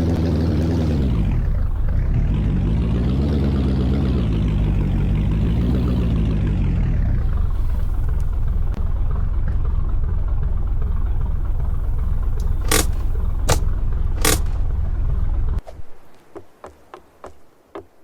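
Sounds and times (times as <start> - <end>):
low vehicle rumble: 0.0 - 16.0
sharp clicks: 12.4 - 14.6.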